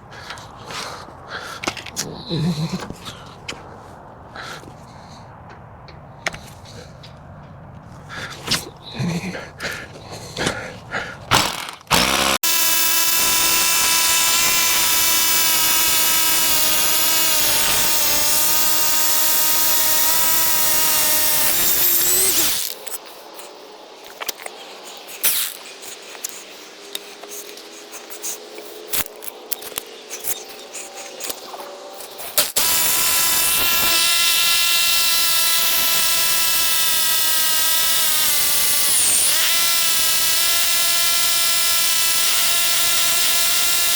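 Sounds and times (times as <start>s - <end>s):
power drill boring into concrete: 11.3s - 23.0s, 25.2s - 25.6s, 32.3s - 43.9s.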